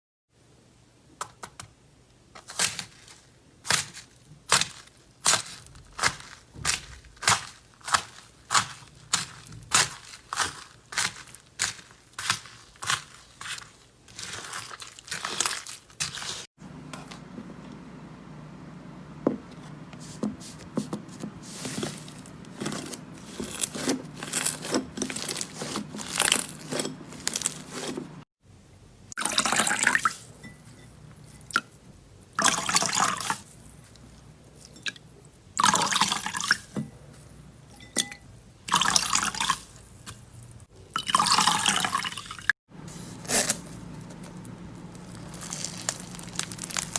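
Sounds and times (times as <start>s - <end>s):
slime squished by hand: 45.0s - 46.9s.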